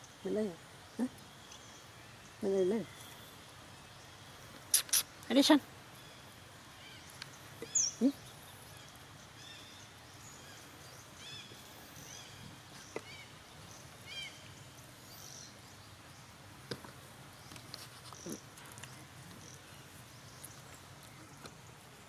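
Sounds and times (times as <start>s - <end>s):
outdoor background noise: 0.0s - 22.0s
high arched chirping calls: 4.0s - 10.6s.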